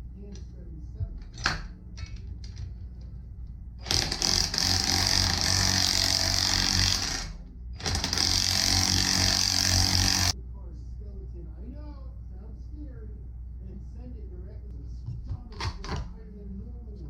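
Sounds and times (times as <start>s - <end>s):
power tool whirring: 3.8s - 10.4s.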